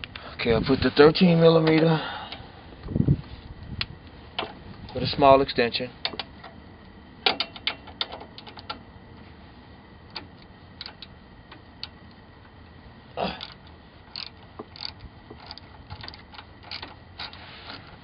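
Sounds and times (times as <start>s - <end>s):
socket ratchet clicking: 13.4s - 17.4s.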